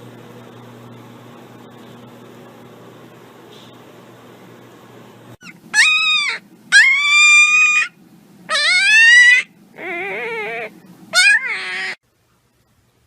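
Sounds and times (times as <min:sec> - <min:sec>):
dog whining howls: 0:05.4 - 0:12.0.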